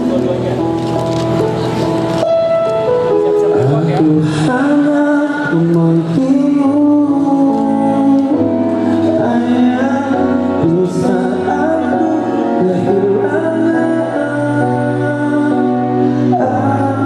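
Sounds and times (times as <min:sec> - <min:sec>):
sustained singing with accompaniment: 0:04.0 - 0:17.0.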